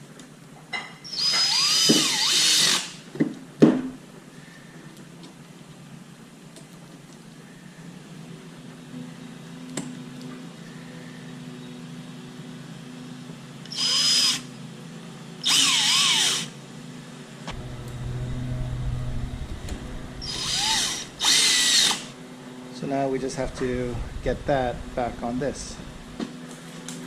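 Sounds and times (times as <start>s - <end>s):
power drill whining: 1.0s - 3.1s, 13.7s - 14.5s, 15.4s - 16.6s, 19.4s - 22.2s
low hum: 17.4s - 26.3s.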